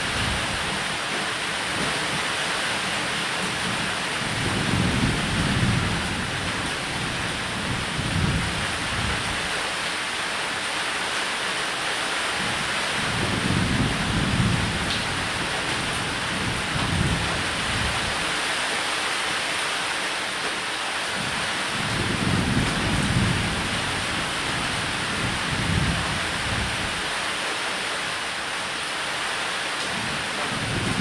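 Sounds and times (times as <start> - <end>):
heavy rain on a roof: 0.0 - 31.0
thunder rumbling: 30.5 - 31.0.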